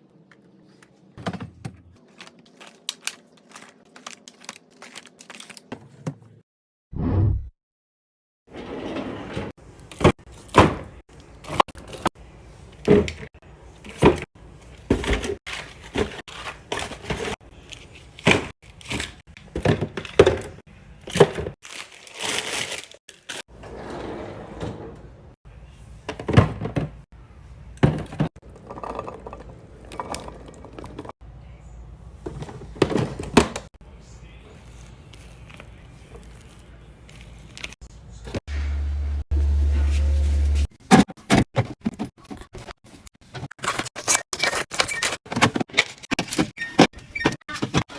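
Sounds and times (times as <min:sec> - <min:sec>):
containers clunking and knocking: 0:01.2 - 0:02.0, 0:26.0 - 0:27.0, 0:27.8 - 0:31.1, 0:32.2 - 0:33.7.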